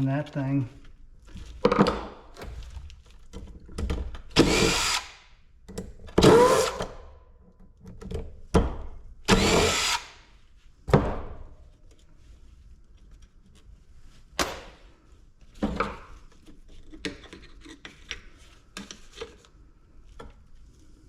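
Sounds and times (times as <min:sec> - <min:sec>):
loud bursts of tool noise: 0:04.4 - 0:05.3, 0:06.2 - 0:06.9, 0:09.3 - 0:10.2.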